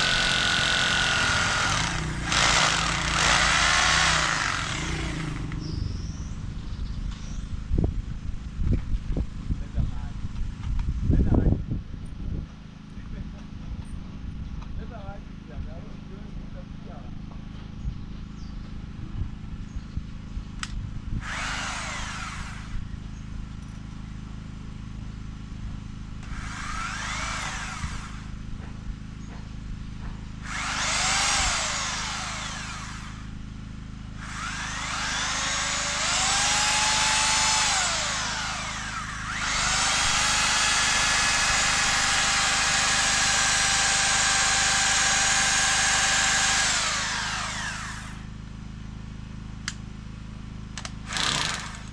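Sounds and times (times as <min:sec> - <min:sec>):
electric drill boring: 0:00.0 - 0:05.6, 0:21.2 - 0:22.9, 0:26.2 - 0:28.4, 0:30.4 - 0:33.4, 0:34.2 - 0:48.3, 0:50.8 - 0:51.9.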